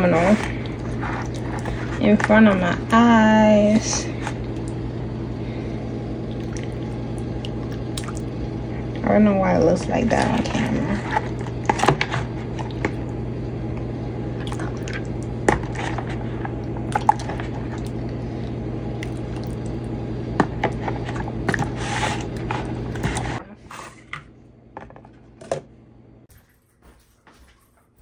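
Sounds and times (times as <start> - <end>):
steady low hum: 0.0 - 28.0
wet squishy food sounds: 6.2 - 8.4.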